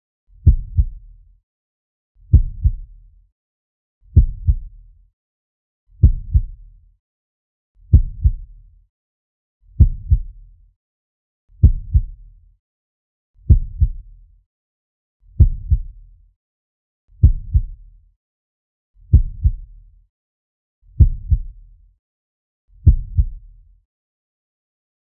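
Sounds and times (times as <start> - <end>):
heartbeat thumps: 0.4 - 1.0, 2.3 - 2.8, 4.2 - 4.6, 6.0 - 6.6, 7.9 - 8.5, 9.8 - 10.3, 11.6 - 12.2, 13.5 - 14.0, 15.4 - 15.9, 17.2 - 17.8, 19.1 - 19.7, 21.0 - 21.5, 22.8 - 23.4.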